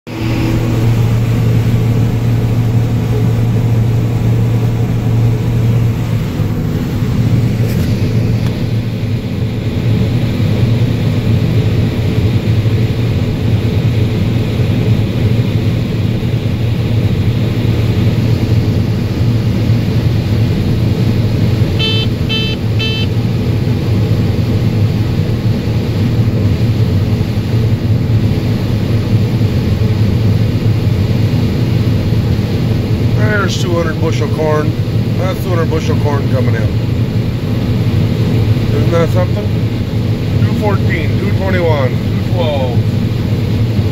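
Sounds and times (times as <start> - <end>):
combine harvester engine hum: 0.1 - 43.9
short high electronic beeps: 21.8 - 23.1.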